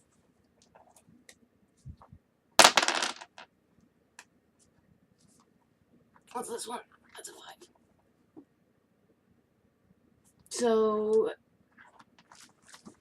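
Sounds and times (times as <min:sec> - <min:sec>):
dice clattering on a tabletop: 0:02.6 - 0:03.5.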